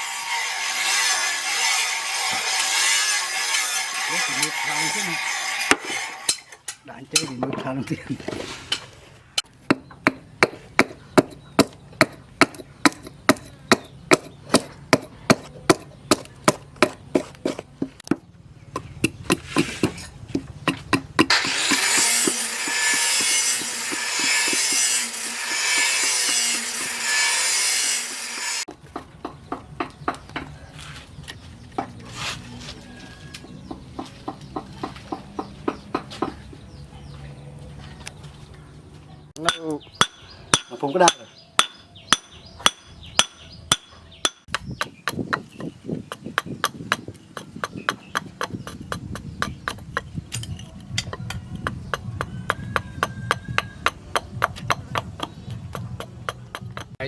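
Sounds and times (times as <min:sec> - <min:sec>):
loud scraping on metal: 0:00.0 - 0:07.4, 0:21.3 - 0:28.7
hammer blows on metal: 0:39.4 - 0:57.0.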